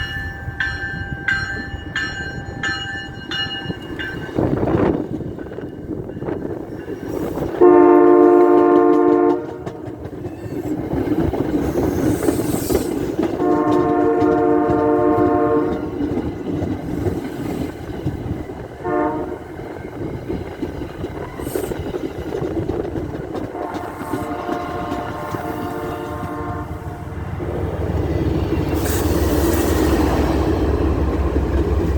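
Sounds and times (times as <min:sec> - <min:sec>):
train rumble and wheel clatter: 0:00.0 - 0:31.9
train air horn blasts: 0:07.6 - 0:10.0, 0:13.3 - 0:16.0, 0:18.8 - 0:19.5, 0:23.5 - 0:27.2.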